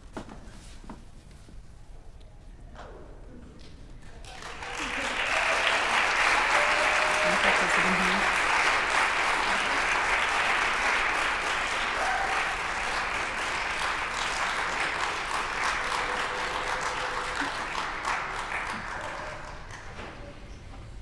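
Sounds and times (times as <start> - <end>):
audience applauding: 4.1 - 20.7.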